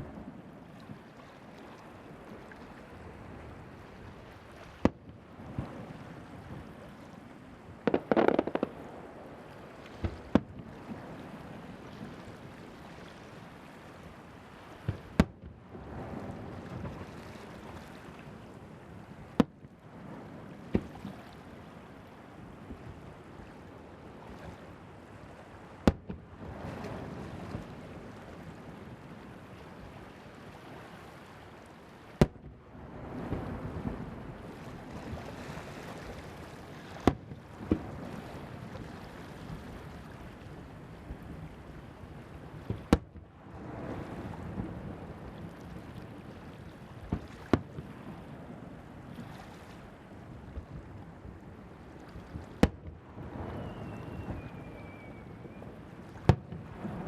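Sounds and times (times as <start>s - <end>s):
surf: 0.0s - 57.0s
wind: 0.0s - 57.0s
fireworks booming: 7.8s - 9.0s, 25.8s - 26.3s
faint falling whistle: 53.4s - 55.8s.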